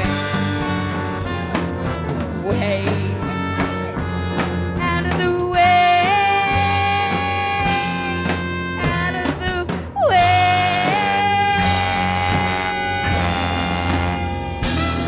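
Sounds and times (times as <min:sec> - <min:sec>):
live rock band playing: 0:00.0 - 0:15.0
lead guitar long notes: 0:10.2 - 0:15.0.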